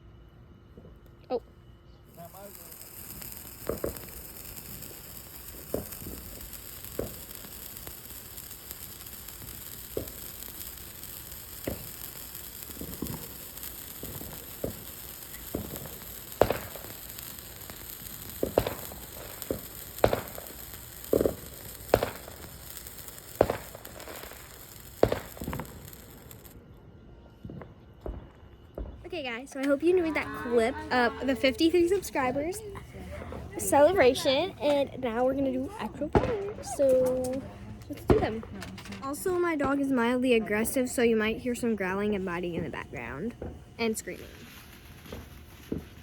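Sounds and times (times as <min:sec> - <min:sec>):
sharp pops: 0:02.1 - 0:26.5, 0:33.6 - 0:39.8
sparklers hissing: 0:02.1 - 0:26.6, 0:29.2 - 0:46.0.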